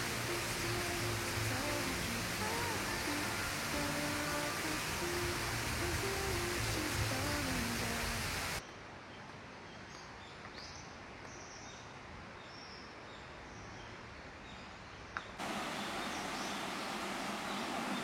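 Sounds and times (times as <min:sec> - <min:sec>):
steady outdoor hiss: 0:00.0 - 0:18.0
small birds chirping: 0:15.2 - 0:18.0.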